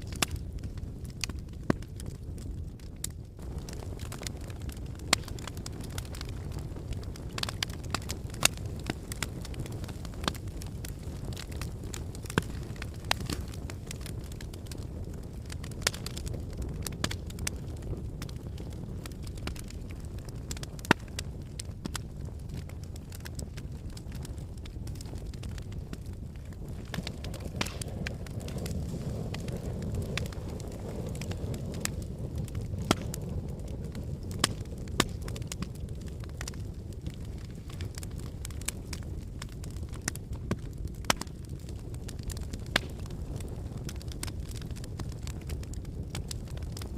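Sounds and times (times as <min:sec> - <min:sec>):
wood fire crackling: 0:00.0 - 0:46.9
loud pop of fire: 0:03.4 - 0:14.8, 0:19.4 - 0:22.0, 0:24.3 - 0:37.8, 0:39.7 - 0:46.9.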